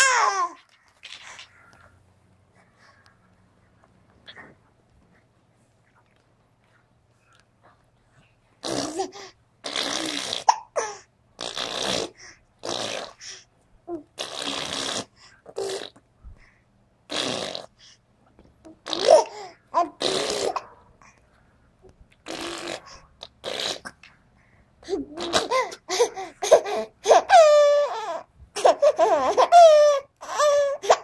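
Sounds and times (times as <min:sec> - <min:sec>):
mouth fart noises: 0:08.6 - 0:10.7, 0:11.4 - 0:13.4, 0:14.1 - 0:16.0, 0:17.1 - 0:17.9, 0:18.7 - 0:20.8, 0:22.2 - 0:24.0, 0:24.9 - 0:25.7.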